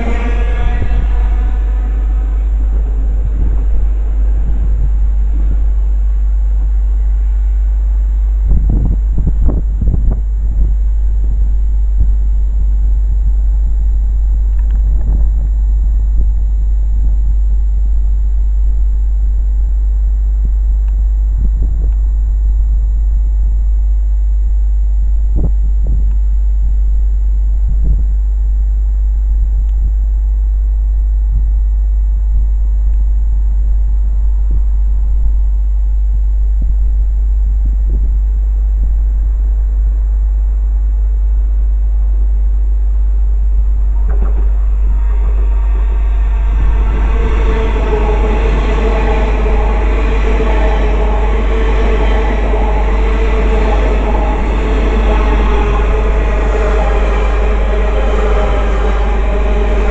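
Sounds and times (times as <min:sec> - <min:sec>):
wind buffeting microphone: 0:00.0 - 0:07.7, 0:08.3 - 0:17.3, 0:21.3 - 0:22.9, 0:25.2 - 0:26.8, 0:27.6 - 0:28.3, 0:36.6 - 0:39.2, 0:43.3 - 0:59.9
faint steady hum: 0:00.0 - 0:59.9.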